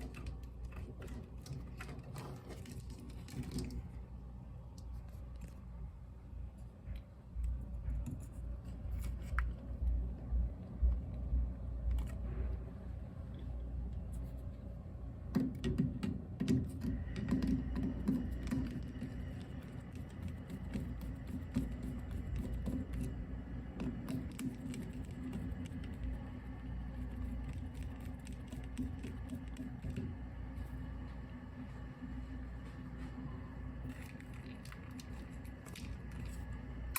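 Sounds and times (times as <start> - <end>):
low steady hum: 0.0 - 36.9
hands and tools clicking and knocking: 15.3 - 23.2.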